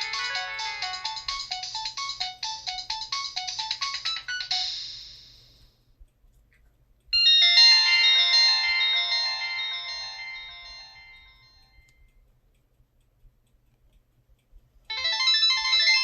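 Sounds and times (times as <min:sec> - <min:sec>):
phone ringtone quick melody: 0:00.0 - 0:05.5, 0:14.9 - 0:16.0
phone ringtone held notes: 0:00.0 - 0:05.6, 0:07.2 - 0:11.9, 0:14.9 - 0:16.0.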